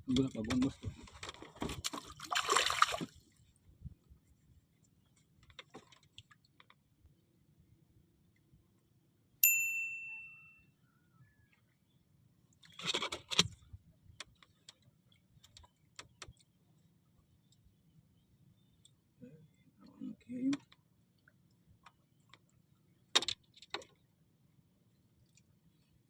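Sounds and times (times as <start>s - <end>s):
bright metallic ding: 9.4s - 10.6s.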